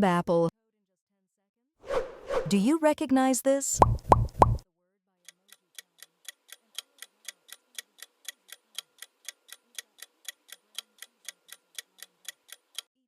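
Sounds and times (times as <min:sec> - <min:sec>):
clock ticking: 0:03.8 - 0:04.6, 0:05.3 - 0:13.0.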